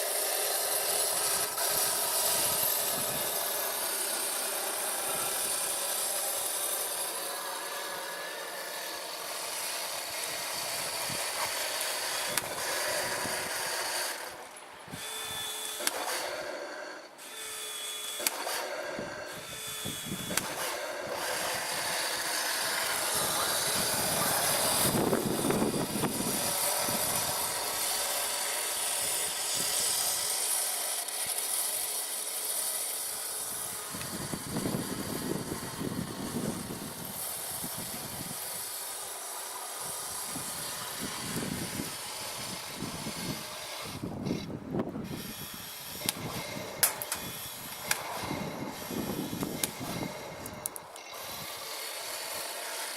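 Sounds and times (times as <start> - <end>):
electric motors whining: 0.0 - 52.9
sharp clicks: 15.6 - 16.4, 18.2 - 18.8, 20.1 - 20.8, 46.0 - 51.2.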